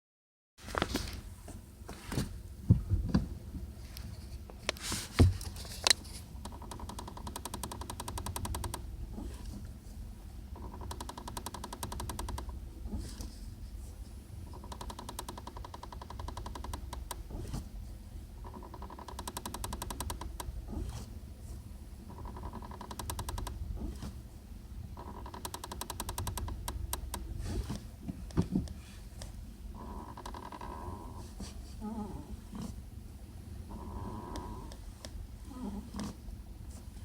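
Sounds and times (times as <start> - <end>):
low steady hum: 0.6 - 37.0
sharp knocks and clicks: 5.2 - 8.8, 10.6 - 12.6, 14.6 - 17.6, 18.4 - 20.5, 22.1 - 24.1, 25.0 - 27.3
car clutch squeaking: 5.9 - 9.6, 10.5 - 13.1, 14.5 - 17.6, 18.4 - 21.1, 22.0 - 24.2, 24.9 - 27.8, 29.8 - 31.2.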